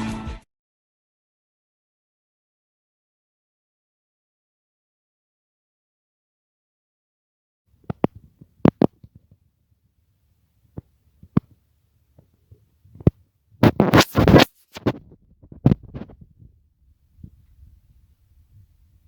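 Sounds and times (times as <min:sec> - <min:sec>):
sharp knocks and clicks: 0:07.8 - 0:09.4
scraping rustle: 0:13.6 - 0:16.3.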